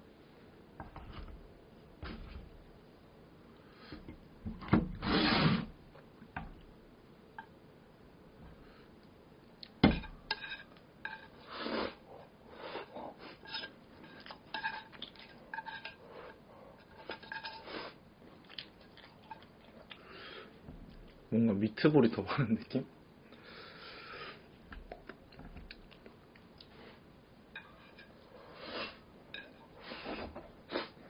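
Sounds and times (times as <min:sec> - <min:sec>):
metal utensil scraping a dish: 0:13.4 - 0:17.7.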